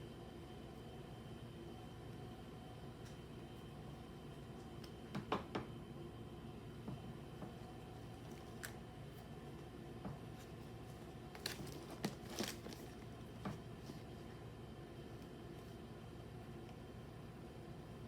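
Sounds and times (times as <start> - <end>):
card packaging crinkling: 10.9 - 13.1.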